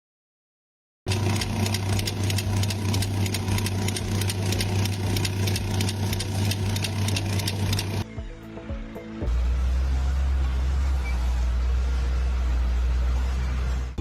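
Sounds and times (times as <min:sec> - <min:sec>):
engine humming with clatter: 0:01.1 - 0:08.0.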